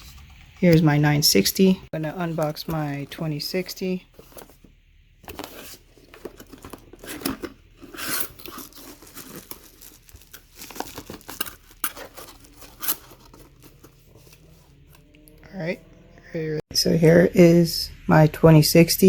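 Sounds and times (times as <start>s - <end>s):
packaging tearing and crinkling: 5.2s - 14.6s.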